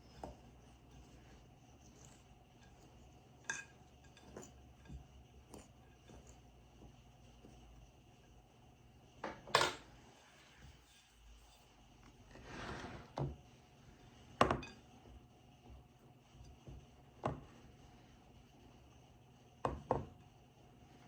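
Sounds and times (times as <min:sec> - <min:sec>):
dishes and utensils knocking: 0:14.4 - 0:14.8.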